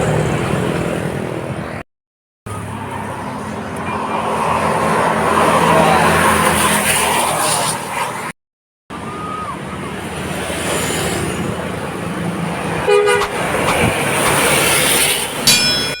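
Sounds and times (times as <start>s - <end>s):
passing vehicles: 0.0s - 1.8s, 2.5s - 16.0s
car horn toot: 12.8s - 13.9s.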